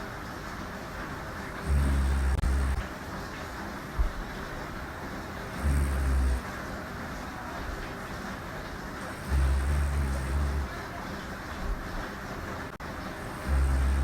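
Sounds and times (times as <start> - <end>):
steady hiss: 0.0 - 14.0
woman snoring: 1.6 - 2.9, 5.5 - 6.5, 9.0 - 10.7, 13.2 - 14.0.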